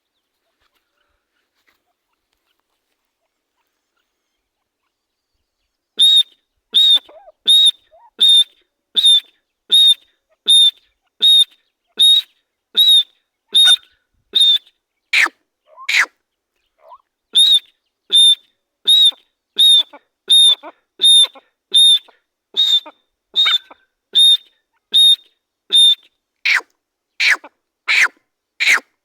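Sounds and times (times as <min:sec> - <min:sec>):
francolin calling: 0:06.0 - 0:13.8, 0:15.2 - 0:16.1, 0:16.8 - 0:28.8.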